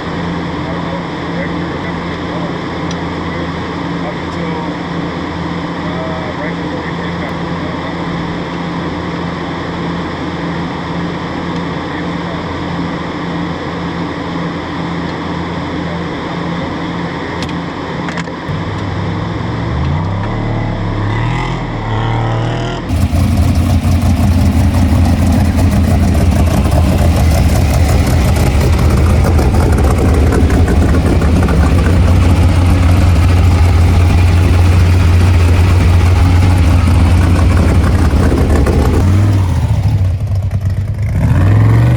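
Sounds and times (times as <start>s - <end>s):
truck engine running: 0.0s - 41.9s
rough rushing noise: 18.4s - 40.6s.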